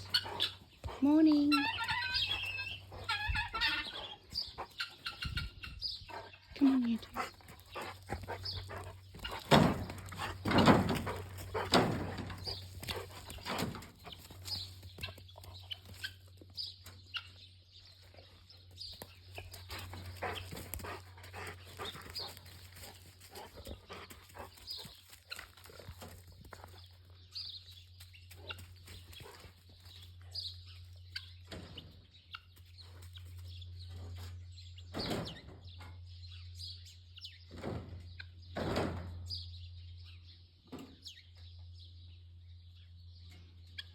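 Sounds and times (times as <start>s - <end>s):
chickens clucking: 0.0s - 17.7s
small birds chirping: 0.0s - 38.6s, 39.2s - 43.9s.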